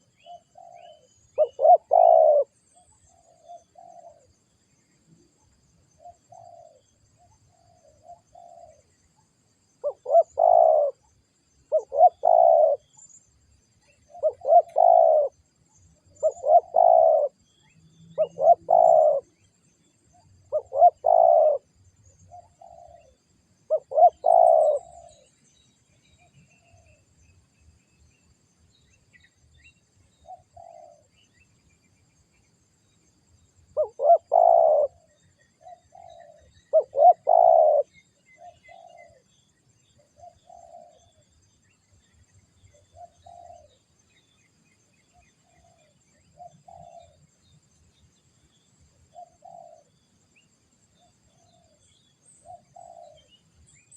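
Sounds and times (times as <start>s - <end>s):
doves cooing: 0.0s - 4.3s, 9.8s - 11.0s, 11.7s - 13.0s, 14.0s - 15.5s, 16.1s - 17.4s, 18.2s - 19.5s, 20.4s - 21.7s, 22.3s - 25.3s, 30.2s - 31.1s, 33.8s - 39.3s, 40.2s - 41.2s, 42.8s - 43.8s, 45.4s - 47.2s, 49.1s - 49.9s, 52.4s - 53.3s.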